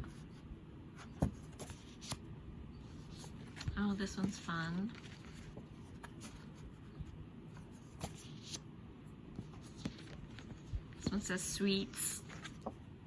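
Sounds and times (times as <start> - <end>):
paper rustling: 2.9 - 8.6, 9.4 - 12.9.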